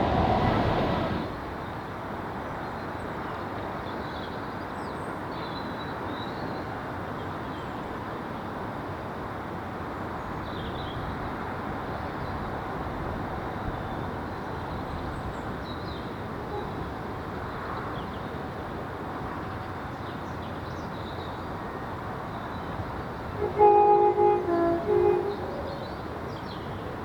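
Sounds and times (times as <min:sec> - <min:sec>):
passing train rushing: 0:00.0 - 0:01.6, 0:21.8 - 0:27.0
train horn blasts: 0:16.4 - 0:16.9, 0:23.4 - 0:25.8.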